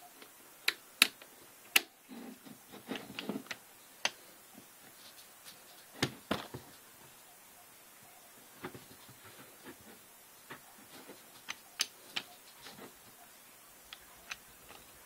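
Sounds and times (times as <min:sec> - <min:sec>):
small clattering handling noises: 0:02.1 - 0:03.6.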